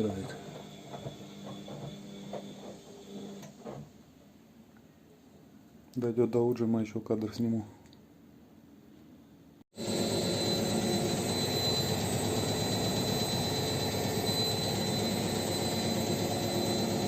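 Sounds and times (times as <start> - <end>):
washing machine spinning: 0.0 - 3.9, 9.8 - 17.0
high motor whine: 9.8 - 17.0.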